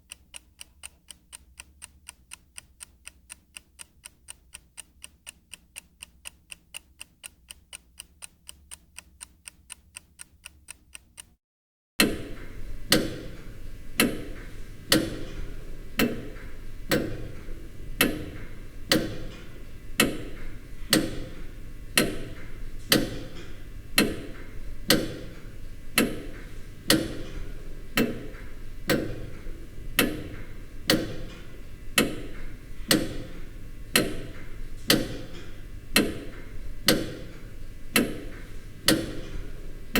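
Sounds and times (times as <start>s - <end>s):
fast light clock ticks: 0.0s - 11.4s, 20.0s - 20.3s, 30.0s - 31.3s, 32.0s - 33.2s, 33.9s - 39.3s
loud slow clock ticking: 0.0s - 11.4s, 34.0s - 35.3s, 38.0s - 38.3s.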